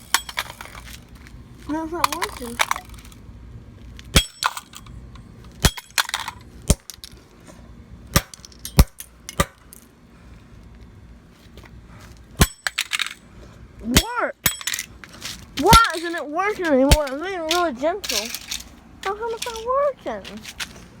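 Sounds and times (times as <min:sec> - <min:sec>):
high metallic ring: 0:04.2 - 0:04.9.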